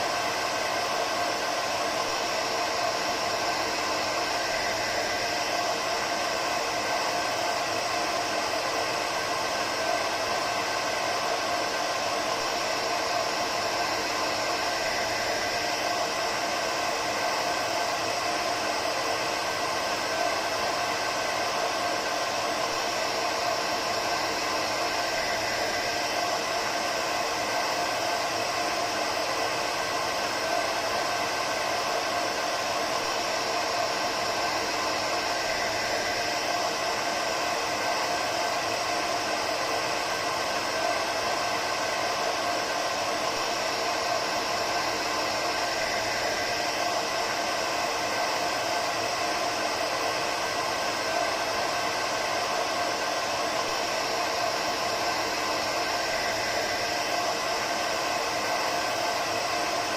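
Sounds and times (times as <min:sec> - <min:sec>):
hair dryer blowing: 0:00.0 - 0:59.9.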